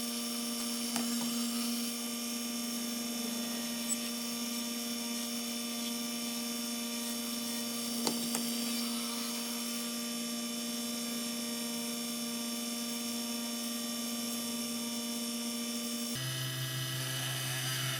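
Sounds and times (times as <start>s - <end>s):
small electric motor running: 0.0s - 17.9s.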